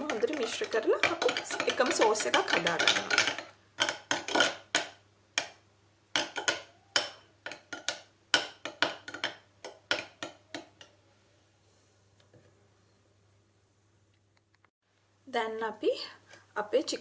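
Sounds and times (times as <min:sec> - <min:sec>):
utensil scraping and clinking bowl: 0:00.0 - 0:05.0.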